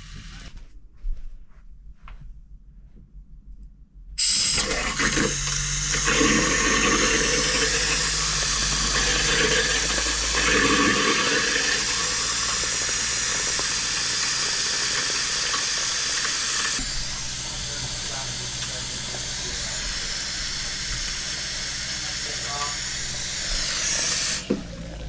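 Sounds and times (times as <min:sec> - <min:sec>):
faucet water rushing: 0:04.2 - 0:25.0
low hum: 0:16.2 - 0:25.0.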